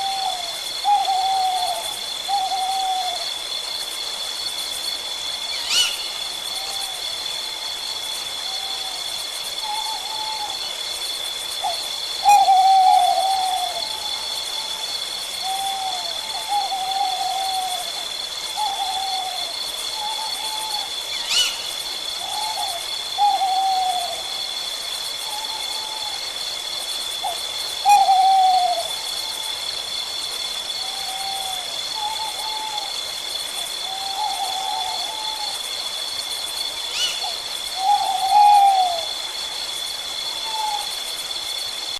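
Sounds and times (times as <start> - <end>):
owl hooting: 0.0 - 3.3, 5.5 - 7.6, 8.4 - 9.0, 9.6 - 10.7, 11.6 - 24.5, 25.2 - 26.3, 27.2 - 29.6, 30.8 - 33.0, 33.8 - 35.6, 36.9 - 39.2, 40.4 - 41.0.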